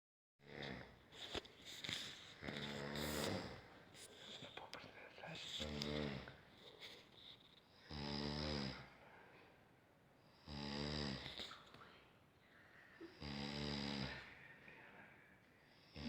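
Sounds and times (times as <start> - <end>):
person snoring: 0.4 - 4.2, 5.6 - 7.0, 7.8 - 9.0, 10.3 - 12.0, 12.9 - 15.0, 15.7 - 16.0
quiet breathing: 0.4 - 16.0.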